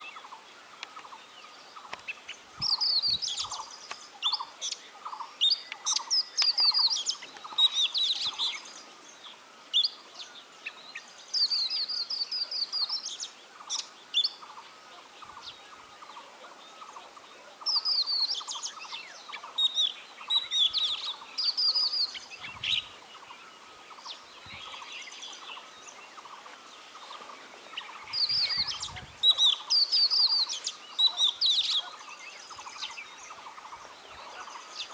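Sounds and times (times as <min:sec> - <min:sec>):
songbird singing high notes: 0:02.1 - 0:08.8, 0:17.6 - 0:23.3, 0:27.7 - 0:34.9.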